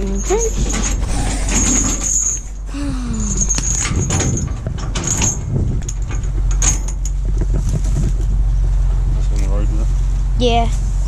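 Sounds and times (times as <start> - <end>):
low vehicle rumble: 0.0 - 11.0
light metallic clicks and rattles: 3.3 - 8.3.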